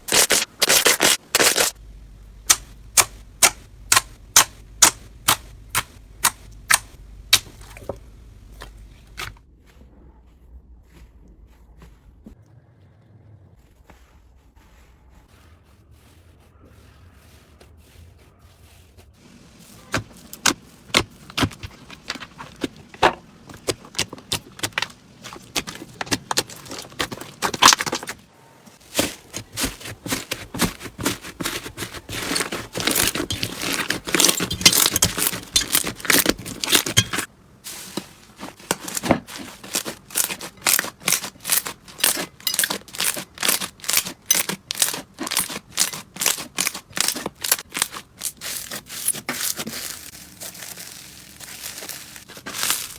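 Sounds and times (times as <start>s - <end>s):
slime crackling and popping: 0.0s - 1.8s, 2.5s - 7.7s, 19.9s - 28.2s, 28.9s - 37.3s, 38.6s - 52.9s.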